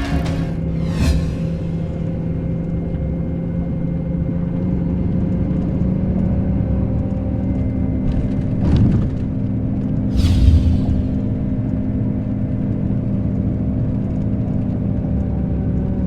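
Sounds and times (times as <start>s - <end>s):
brief bursts of noise: 10.1s - 11.6s.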